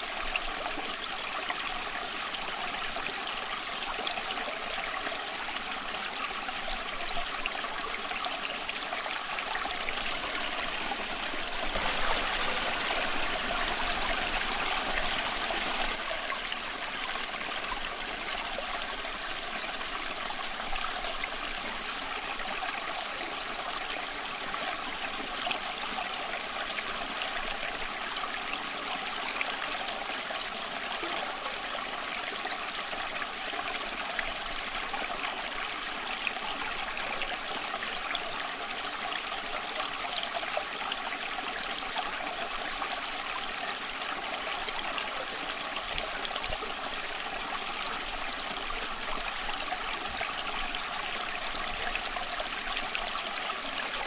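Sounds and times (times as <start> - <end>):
stream babbling over stones: 0.0 - 54.0.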